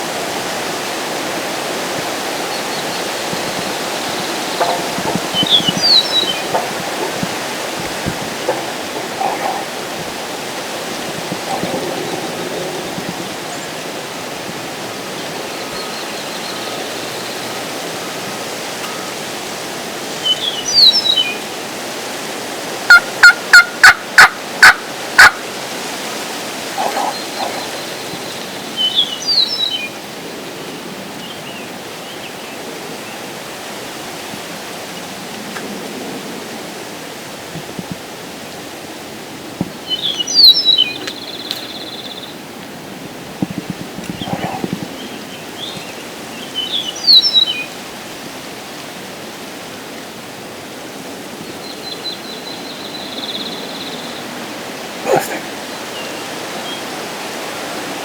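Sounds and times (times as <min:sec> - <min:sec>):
wind: 0:00.0 - 0:58.0
turkey gobbling: 0:04.6 - 0:12.0, 0:22.9 - 0:25.5, 0:26.8 - 0:27.7
turkey call yelps: 0:22.9 - 0:25.4.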